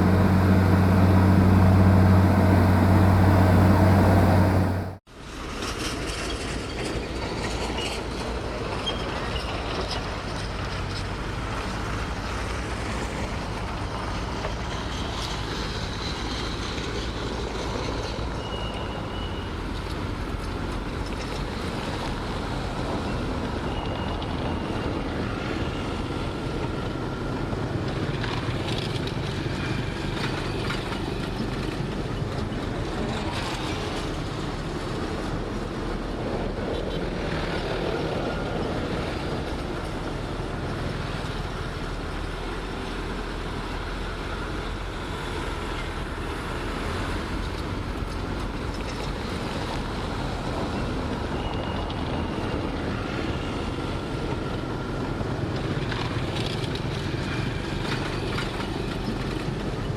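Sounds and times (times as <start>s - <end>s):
diesel machinery engine drone: 0.0s - 5.0s, 18.9s - 59.9s.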